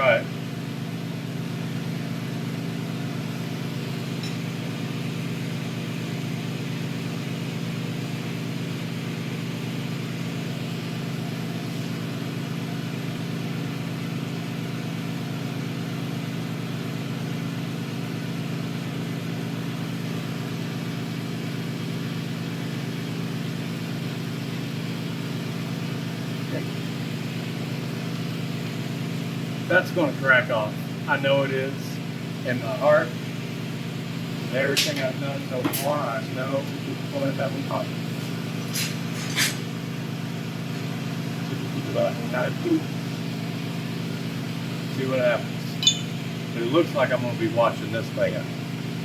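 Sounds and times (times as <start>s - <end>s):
burner and blower hissing: 26.2s - 48.9s.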